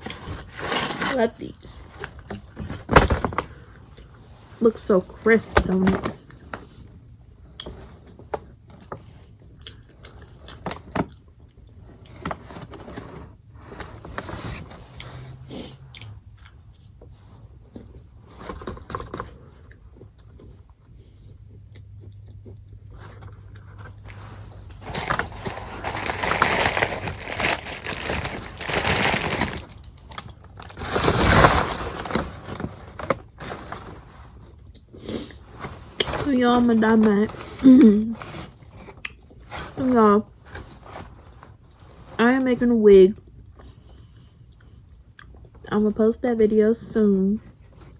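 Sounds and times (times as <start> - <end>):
chewing and crunching food: 0.0 - 4.8, 6.1 - 31.1, 31.8 - 36.2, 36.8 - 39.8, 43.2 - 45.7
crackly noise: 22.0 - 42.2.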